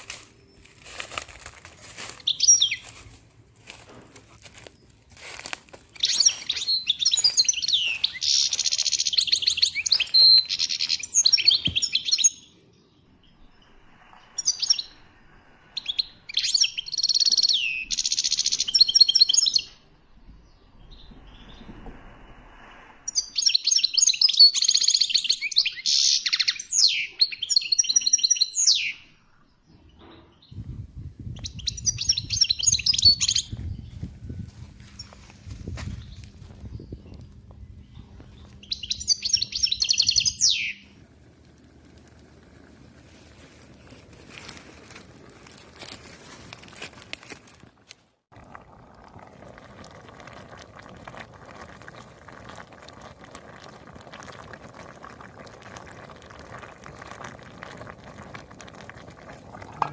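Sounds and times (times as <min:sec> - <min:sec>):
songbird chirping and trilling: 0:02.1 - 0:03.2, 0:06.0 - 0:13.7, 0:15.8 - 0:19.8, 0:23.1 - 0:30.6, 0:31.4 - 0:34.1, 0:34.9 - 0:40.9.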